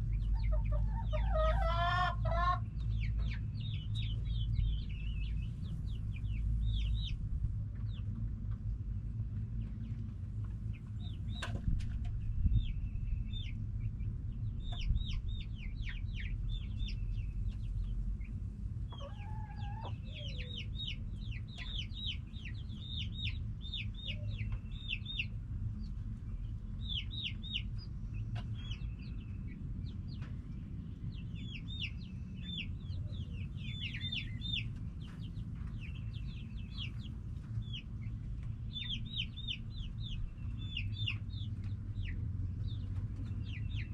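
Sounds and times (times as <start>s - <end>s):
chicks chirping: 0.0s - 43.9s
low rumble: 0.0s - 43.9s
hen calling: 0.5s - 2.7s.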